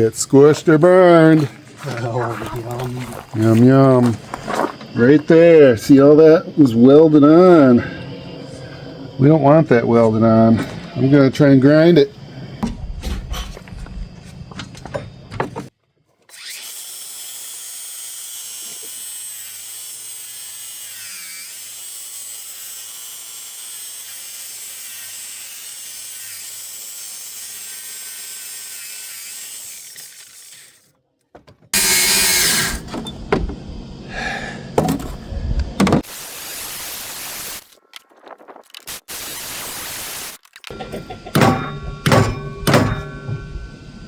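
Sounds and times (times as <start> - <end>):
power grinder whining: 16.3 - 30.9, 31.7 - 35.4
harsh grinding noise: 31.8 - 37.9.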